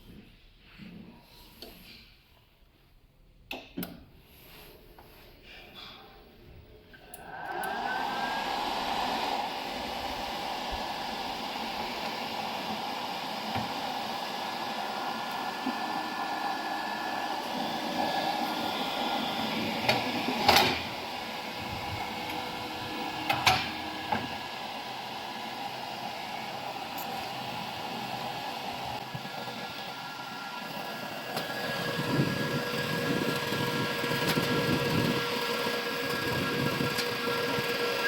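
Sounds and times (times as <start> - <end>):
cooling fan whirring: 7.0 - 38.0.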